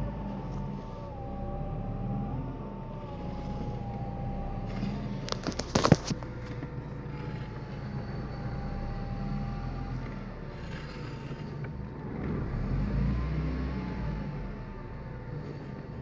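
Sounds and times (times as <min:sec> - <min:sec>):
car engine idling with whine: 0:00.0 - 0:16.0.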